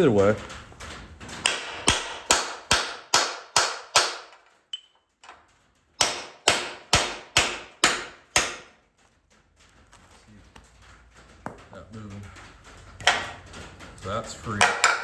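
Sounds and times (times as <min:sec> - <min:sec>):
hammer striking steel: 0:01.4 - 0:05.0, 0:06.0 - 0:08.8, 0:14.6 - 0:15.0.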